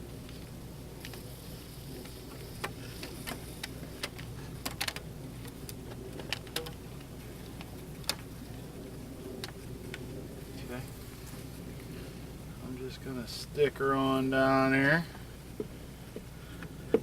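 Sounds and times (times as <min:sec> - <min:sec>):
steady low hum: 0:00.0 - 0:17.0
small clicks and ticks: 0:00.2 - 0:08.5, 0:09.3 - 0:10.1.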